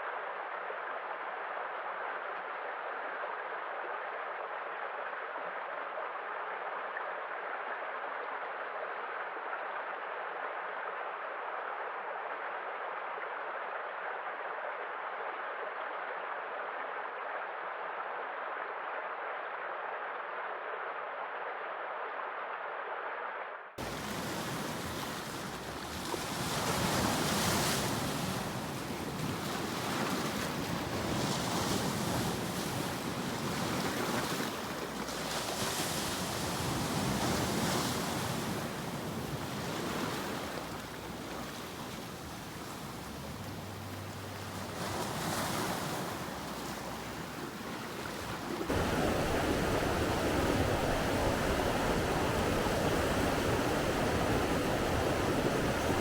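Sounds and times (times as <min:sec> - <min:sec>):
ocean waves breaking: 0:23.8 - 0:56.0
wind buffeting microphone: 0:23.8 - 0:56.0.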